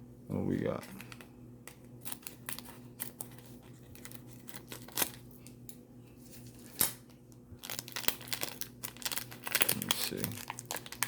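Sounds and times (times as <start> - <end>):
foil wrapper tearing and crinkling: 1.7 - 5.6, 6.4 - 11.0
sharp foil snaps: 6.6 - 11.0.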